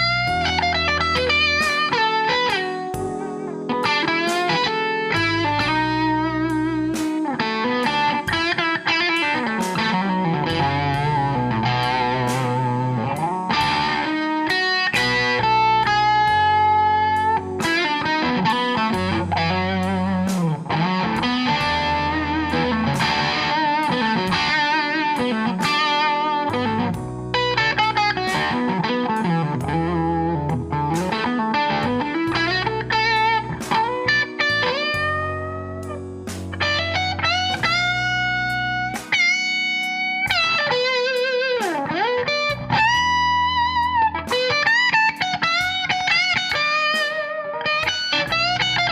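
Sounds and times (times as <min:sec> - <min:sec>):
electric guitar blues lead: 0:00.0 - 0:48.9.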